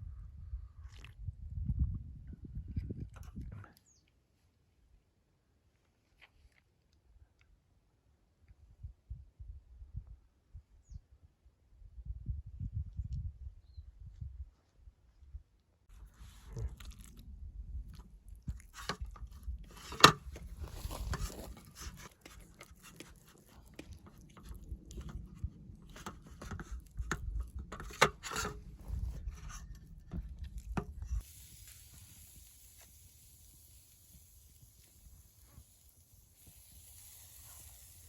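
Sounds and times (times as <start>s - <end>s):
crunching and scraping of handling: 15.9s - 31.3s
faint steady hiss: 31.0s - 38.0s.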